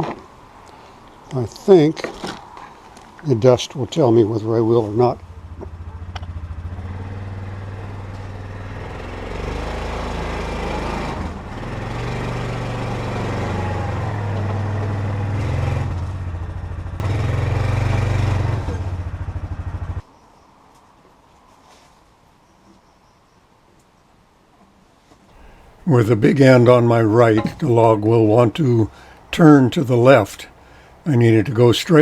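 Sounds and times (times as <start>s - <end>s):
engine running under varying load: 4.8s - 20.0s, 25.4s - 31.7s.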